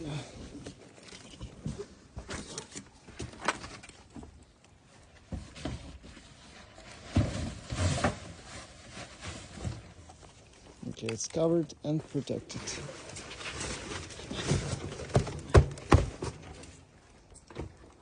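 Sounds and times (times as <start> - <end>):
cardboard box scrapes and knocks: 5.3 - 9.9, 13.1 - 16.4
plastic sheeting rustling: 6.0 - 10.1.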